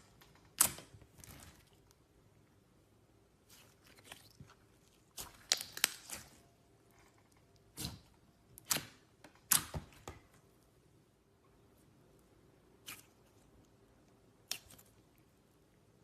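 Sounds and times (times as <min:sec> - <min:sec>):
slime crackling and popping: 0:05.0 - 0:06.5.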